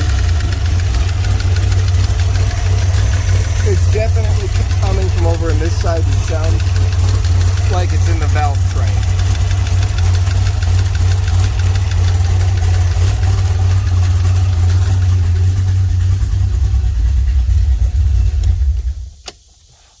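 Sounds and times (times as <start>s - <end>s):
car engine idling with a tick: 0.0s - 19.6s
sharp click: 18.4s - 19.5s.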